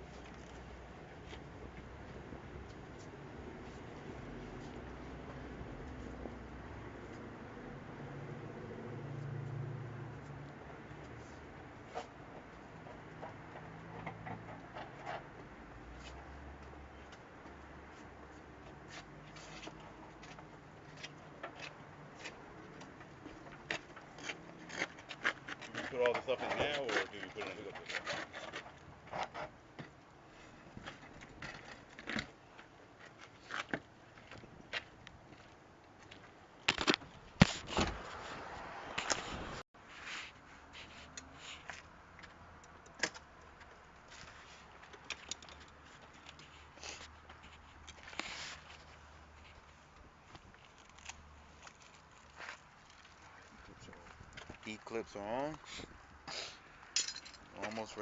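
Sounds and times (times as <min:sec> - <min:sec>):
tools being handled: 0:56.9 - 0:57.9.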